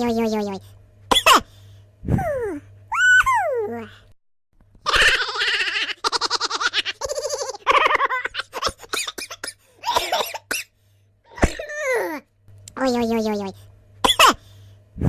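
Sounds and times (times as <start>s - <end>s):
faint steady hum: 0.0s - 15.0s
person making high laughter-like sounds: 4.8s - 8.9s.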